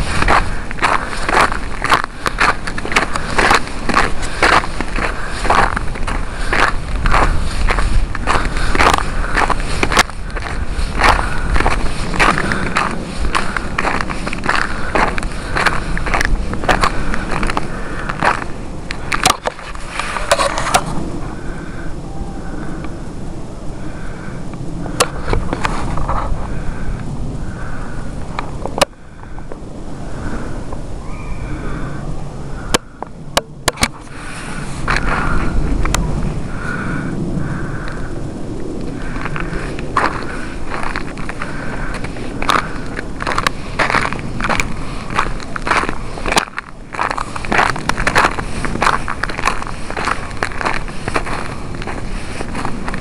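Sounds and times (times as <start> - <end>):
footsteps crunching in snow: 0.0 - 21.4, 25.0 - 26.8, 33.8 - 36.9, 37.5 - 53.0
steady low rumble: 0.0 - 53.0.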